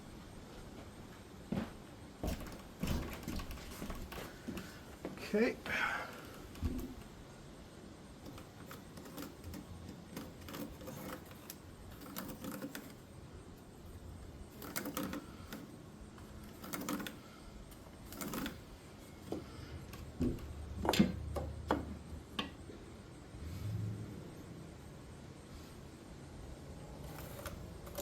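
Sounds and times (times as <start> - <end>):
pencil scratching on wood: 8.3 - 13.2
sharp clicks and knocks: 19.2 - 22.6.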